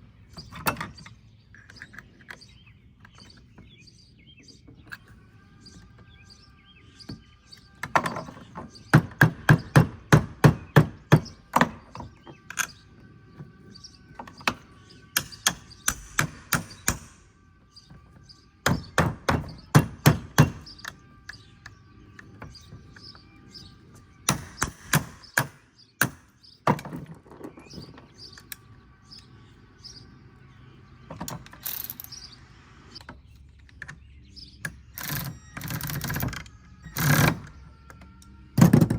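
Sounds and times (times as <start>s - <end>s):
sharp knocks from hand tool: 15.2s - 17.2s, 24.3s - 26.3s.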